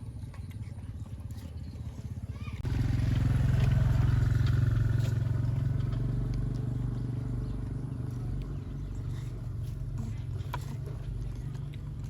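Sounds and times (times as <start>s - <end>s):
engine humming: 0.0s - 12.0s.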